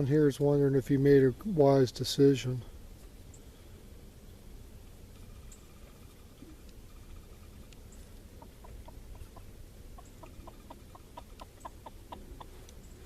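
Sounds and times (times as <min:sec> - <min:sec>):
chicken clucking: 0:08.4 - 0:12.7.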